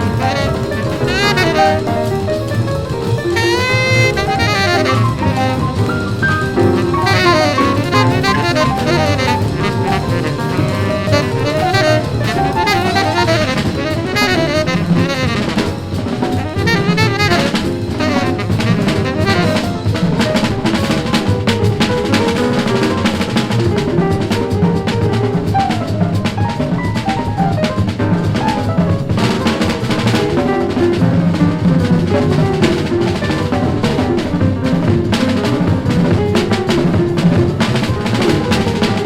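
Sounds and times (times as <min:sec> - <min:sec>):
horn playing fast runs: 0:00.0 - 0:21.0
drum kit: 0:00.0 - 0:39.0
hard bop jazz from vinyl: 0:00.0 - 0:39.0.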